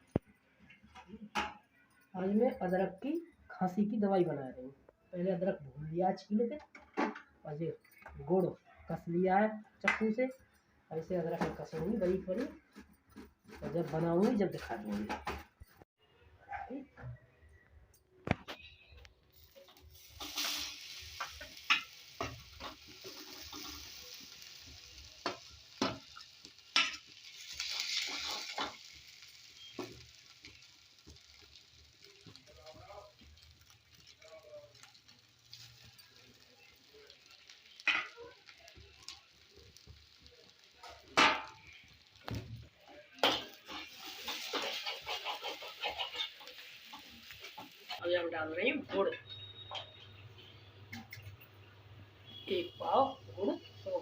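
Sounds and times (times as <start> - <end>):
utensils scraping: 43.3 - 48.0.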